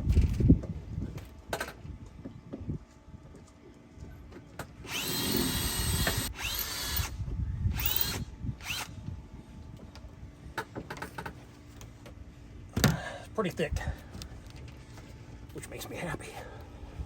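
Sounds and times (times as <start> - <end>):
electric drill with hole saw cutting: 4.9 - 8.9.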